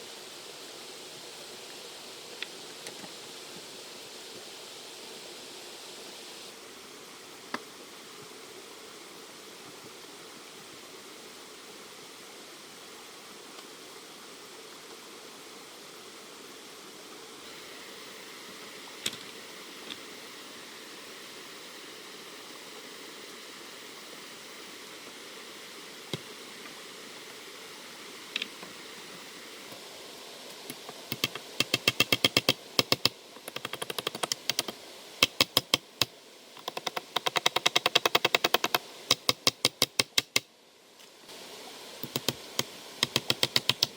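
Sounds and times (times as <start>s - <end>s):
steady background hiss: 0.0s - 43.9s
sharp clicks: 30.7s - 40.4s, 42.0s - 43.9s
fast sharp knocks: 31.1s - 35.9s, 36.6s - 40.4s, 43.0s - 43.9s.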